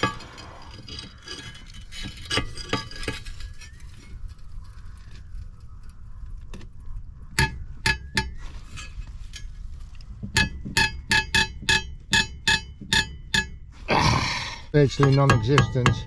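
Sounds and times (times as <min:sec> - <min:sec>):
hammer striking metal: 0:15.0 - 0:16.0.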